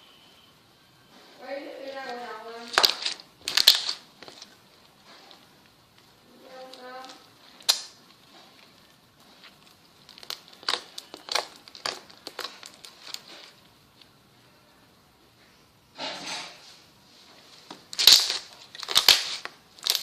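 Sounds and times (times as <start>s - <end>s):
slime clicking and popping: 2.7s - 4.5s, 6.6s - 8.8s, 9.6s - 13.5s, 17.9s - 20.0s.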